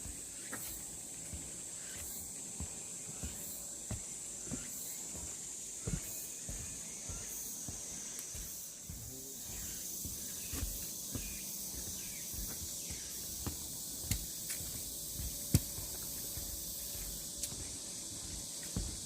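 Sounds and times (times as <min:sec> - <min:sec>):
cicadas droning: 0:00.0 - 0:19.0
sharp knocks and thuds: 0:02.6 - 0:19.0.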